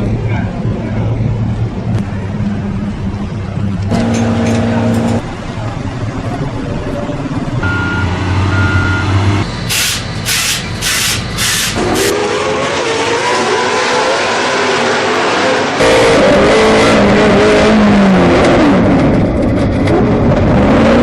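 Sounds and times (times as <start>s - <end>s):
vehicle engine running: 0.0s - 12.1s
bursts of hissing: 9.5s - 12.1s.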